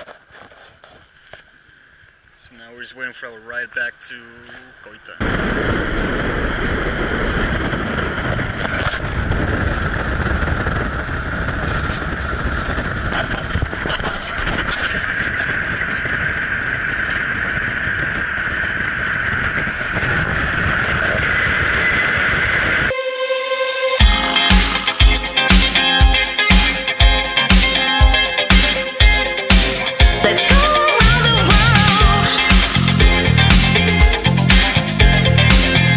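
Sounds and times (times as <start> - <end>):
steady engine whine: 5.8 - 35.9
vehicle engine rumble: 6.5 - 22.9, 31.0 - 35.9.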